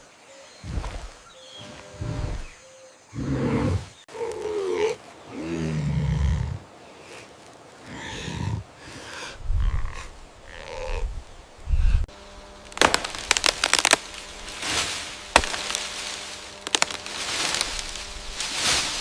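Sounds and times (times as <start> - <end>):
wood cracking and snapping: 12.7 - 19.0.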